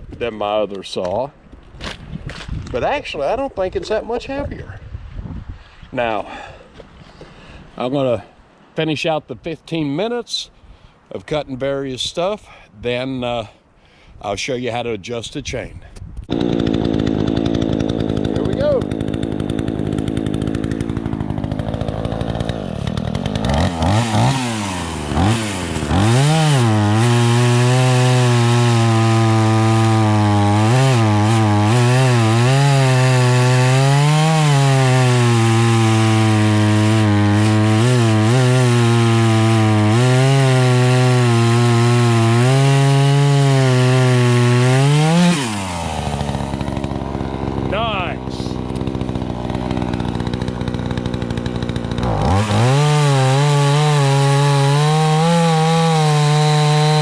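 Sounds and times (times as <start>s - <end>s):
chainsaw revving and cutting: 16.3s - 57.0s.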